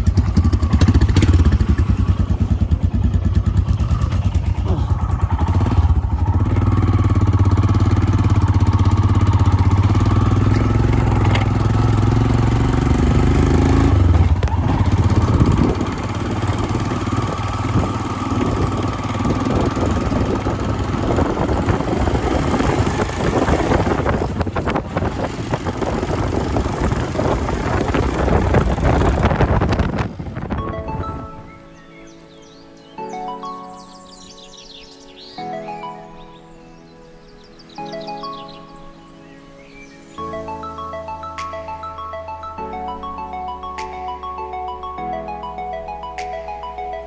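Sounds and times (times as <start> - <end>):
motorcycle engine running: 0.0 - 31.6
wind and road noise: 0.0 - 32.8.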